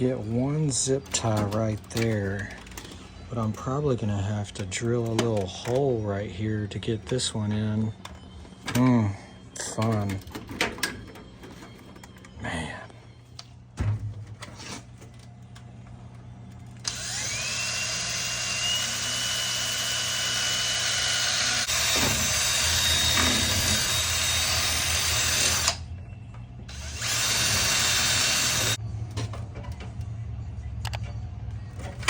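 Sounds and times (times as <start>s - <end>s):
power drill whining: 16.8s - 25.8s, 26.7s - 28.8s.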